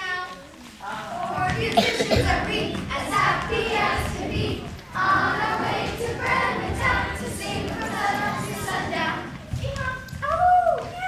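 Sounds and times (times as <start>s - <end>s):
children speaking: 0.0s - 11.0s
children singing: 0.8s - 9.6s.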